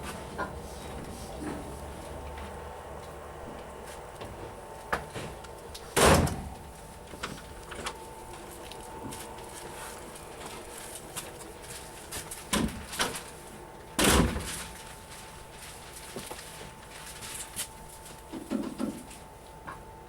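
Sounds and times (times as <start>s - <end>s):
faint steady hum: 0.0s - 20.0s
train door slamming: 4.3s - 8.0s, 14.0s - 14.7s.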